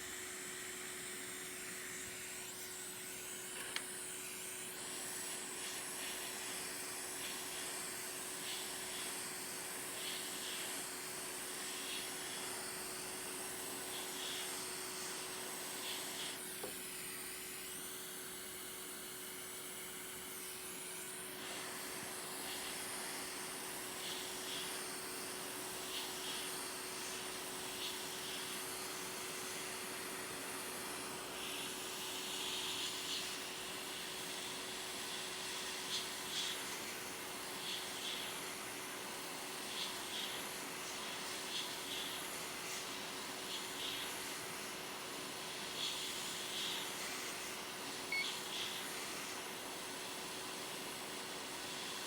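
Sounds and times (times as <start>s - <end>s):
hot air station hissing: 0.0s - 17.4s, 20.5s - 52.0s.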